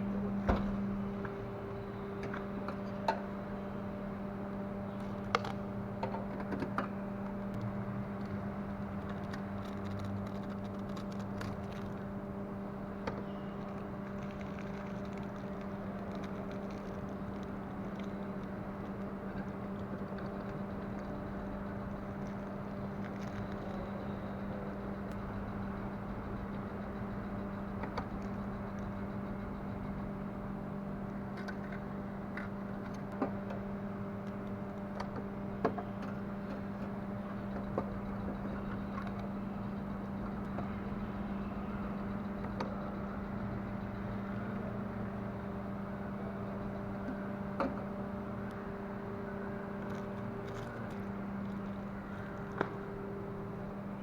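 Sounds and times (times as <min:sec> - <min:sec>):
machine hum: 0:00.0 - 0:54.0
faint clicks and taps: 0:13.0 - 0:24.2.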